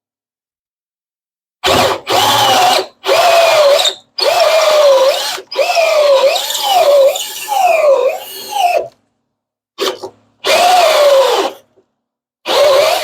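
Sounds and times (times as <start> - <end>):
power drill with hole saw whining: 1.6 - 9.0, 9.8 - 11.7, 12.5 - 13.0.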